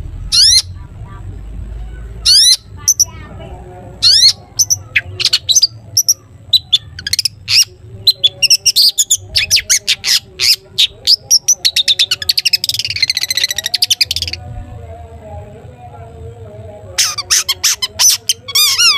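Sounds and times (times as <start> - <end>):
bird chirping and whistling: 0.3 - 0.7, 2.3 - 3.1, 4.0 - 14.4.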